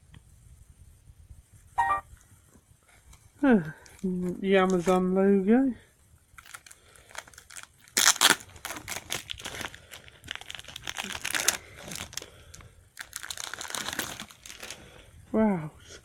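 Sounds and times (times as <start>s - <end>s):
packaging crinkling and tearing: 6.4s - 15.0s.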